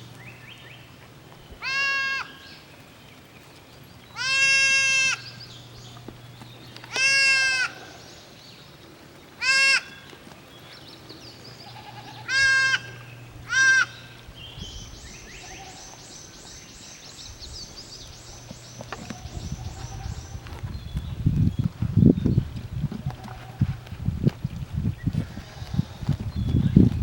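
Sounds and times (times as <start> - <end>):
goats bleating: 1.6 - 2.5, 4.2 - 5.4, 6.9 - 8.1, 9.4 - 10.2, 11.6 - 14.3, 19.0 - 20.6, 23.0 - 23.9, 25.2 - 26.3.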